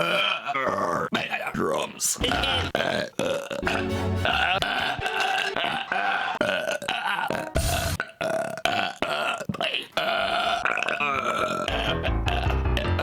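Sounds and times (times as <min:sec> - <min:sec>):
man burping: 0:02.2 - 0:13.0.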